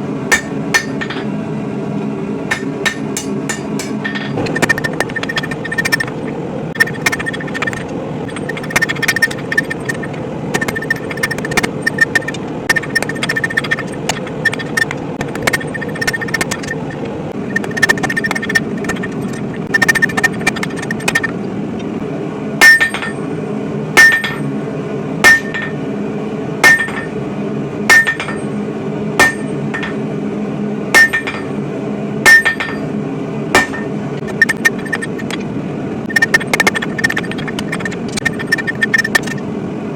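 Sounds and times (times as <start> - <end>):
steady low hum: 0.0 - 39.9
anvil ringing: 0.3 - 1.3, 2.5 - 6.2, 22.6 - 23.3, 24.0 - 24.5, 25.2 - 25.8, 26.6 - 27.2, 27.9 - 28.6, 29.2 - 30.0, 31.0 - 31.6, 32.3 - 32.9, 33.6 - 35.3
hammer striking steel on anvil: 0.3 - 1.3, 2.5 - 6.2, 22.6 - 23.3, 24.0 - 24.5, 25.2 - 25.8, 26.6 - 27.2, 27.9 - 28.6, 29.2 - 30.0, 31.0 - 31.6, 32.2 - 32.9, 33.6 - 35.4.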